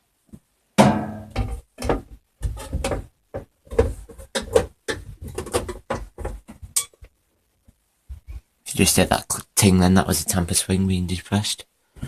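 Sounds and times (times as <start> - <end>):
plastic cover knocks and clatters: 0.8 - 7.2.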